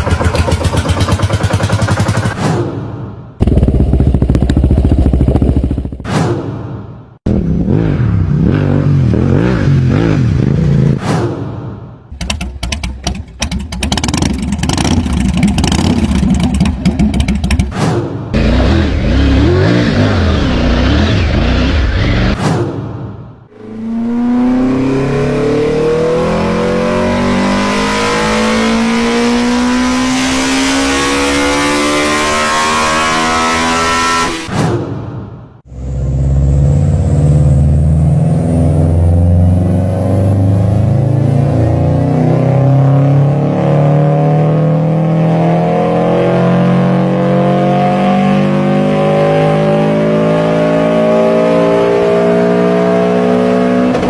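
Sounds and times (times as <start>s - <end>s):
car engine accelerating: 18.4s - 22.4s, 23.5s - 34.5s, 35.7s - 54.0s.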